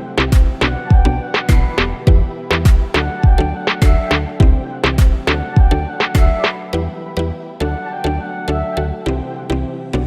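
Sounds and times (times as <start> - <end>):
instrumental fusion music: 0.0 - 6.8.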